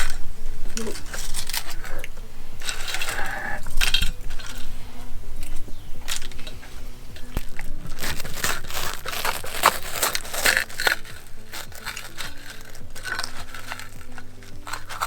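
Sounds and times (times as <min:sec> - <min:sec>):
crisp packet crinkling: 0:00.0 - 0:15.0
food crunching: 0:00.0 - 0:15.0
quiet background music: 0:00.0 - 0:15.0.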